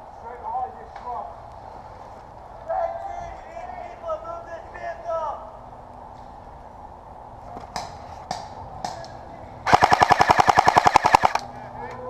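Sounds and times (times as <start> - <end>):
airsoft gun firing: 9.7 - 11.4.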